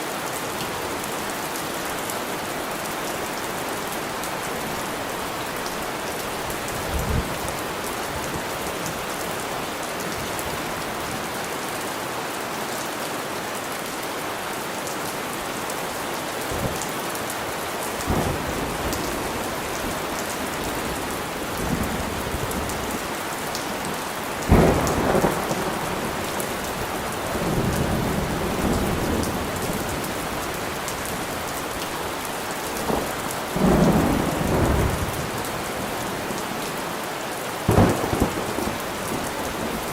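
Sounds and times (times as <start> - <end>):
heavy rain falling: 0.0 - 39.9
thunder rumbling and cracking: 24.4 - 30.1, 37.7 - 39.9.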